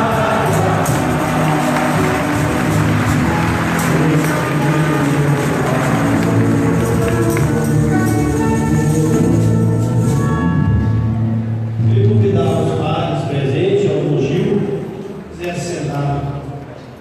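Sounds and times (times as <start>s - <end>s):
held sung or played notes: 0.0s - 10.8s
tambourine shaking: 0.1s - 10.2s.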